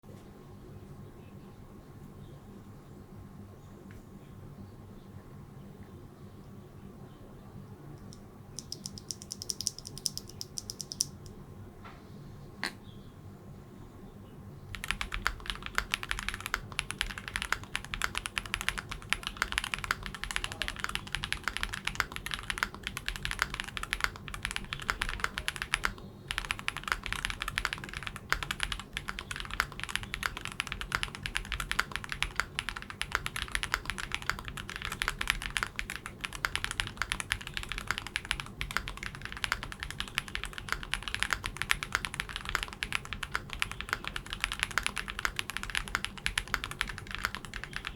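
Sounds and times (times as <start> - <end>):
fast mechanical keyboard typing: 8.6 - 11.3, 14.7 - 47.9.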